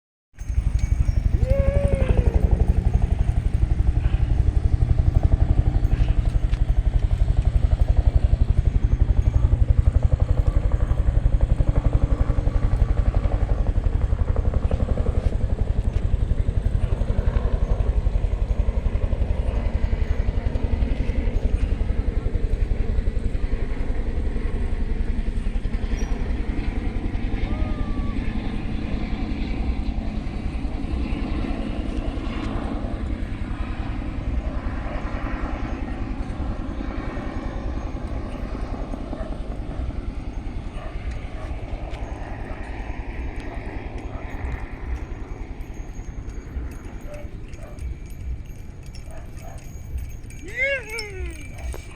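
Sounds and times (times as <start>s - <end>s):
motorcycle engine running: 0.4s - 18.4s
engine whine: 0.4s - 51.9s.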